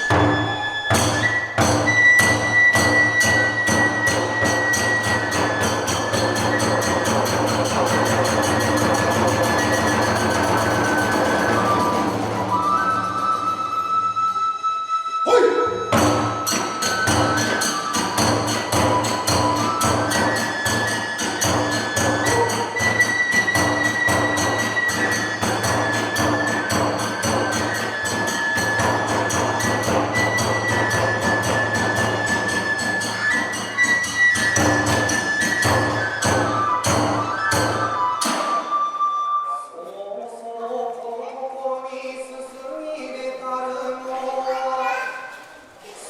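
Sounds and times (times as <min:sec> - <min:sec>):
hand cymbals clashing: 0:00.0 - 0:12.4, 0:15.9 - 0:38.7
drum strokes: 0:00.0 - 0:14.0, 0:15.5 - 0:38.9
bamboo flute held notes: 0:00.0 - 0:39.9.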